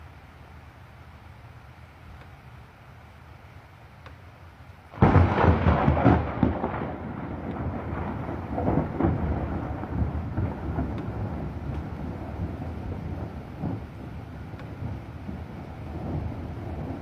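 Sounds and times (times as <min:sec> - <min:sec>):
steady rain: 0:00.0 - 0:17.0
rumbling thunder: 0:05.0 - 0:17.0.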